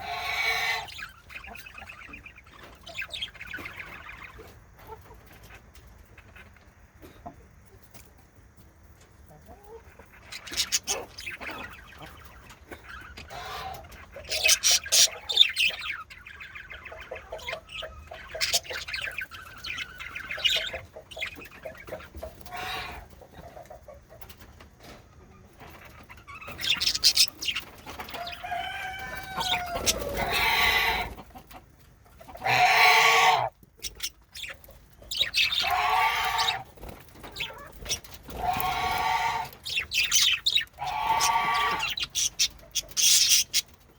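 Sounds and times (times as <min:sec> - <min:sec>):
budgerigars chattering: 0:09.9 - 0:23.7, 0:25.8 - 0:31.3, 0:32.2 - 0:43.9
harsh bird squawks: 0:32.4 - 0:33.5, 0:35.5 - 0:36.6, 0:38.3 - 0:39.6, 0:40.6 - 0:42.4.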